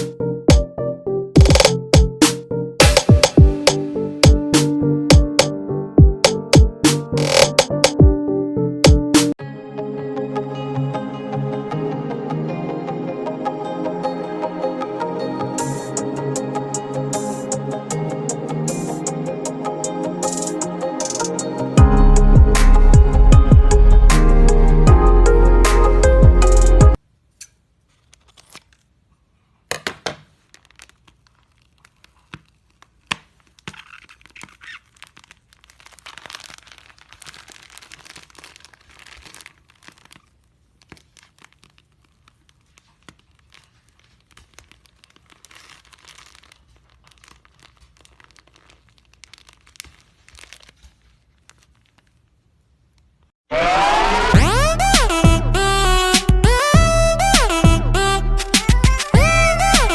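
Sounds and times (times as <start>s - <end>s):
sharp clicks: 1.4s - 5.5s, 6.2s - 8.0s
sticky crackly crinkling: 30.3s - 53.1s.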